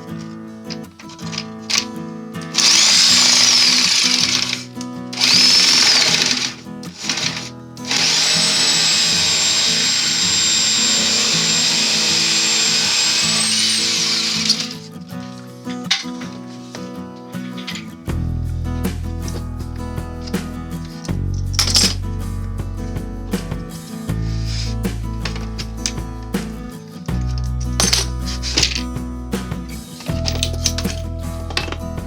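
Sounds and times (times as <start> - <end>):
background guitar music: 0.0 - 32.0
jigsaw motor whining: 2.6 - 4.6, 5.2 - 14.8.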